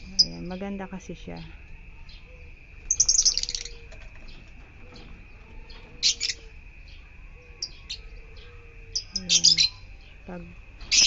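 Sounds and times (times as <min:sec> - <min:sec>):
lovebirds chirping: 0:00.0 - 0:11.0.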